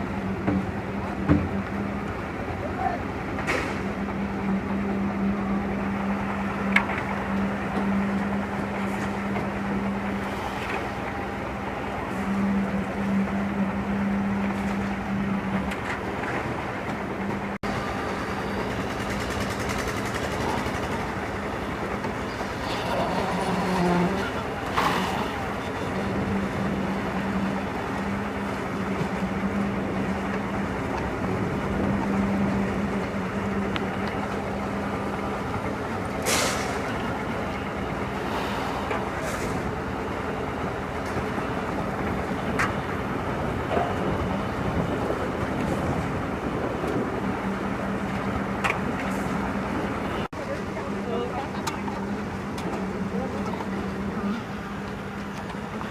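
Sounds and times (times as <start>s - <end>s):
heavy machinery engine running: 0.0s - 55.9s.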